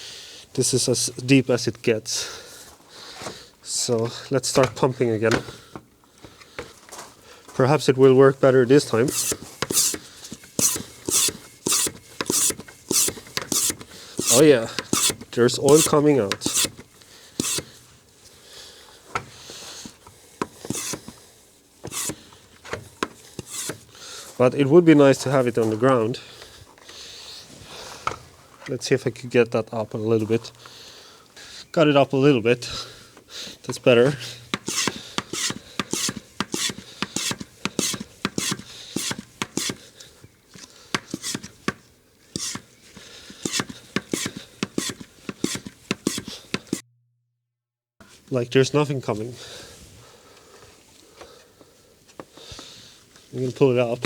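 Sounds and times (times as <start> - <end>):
pump air hiss: 9.0 - 17.9, 20.6 - 21.2, 21.8 - 22.4, 23.4 - 24.3, 34.2 - 40.0, 40.9 - 41.6, 42.4 - 46.8
pump clicks: 9.1 - 17.7.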